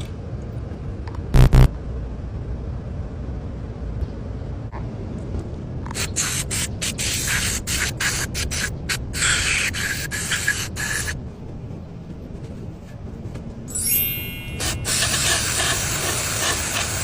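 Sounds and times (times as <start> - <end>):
steady low rumble: 0.2 - 5.9, 11.2 - 13.7
aerosol spray can hissing: 14.6 - 17.0.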